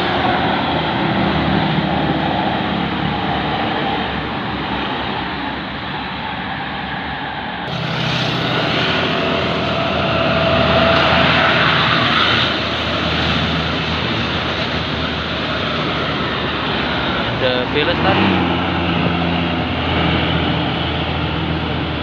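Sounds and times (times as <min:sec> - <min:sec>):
bus engine drone: 0:00.0 - 0:22.0.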